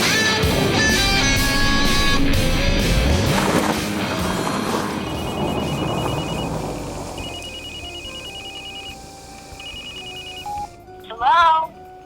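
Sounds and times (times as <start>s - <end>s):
telephone ringing two-tone trill: 5.0s - 10.8s.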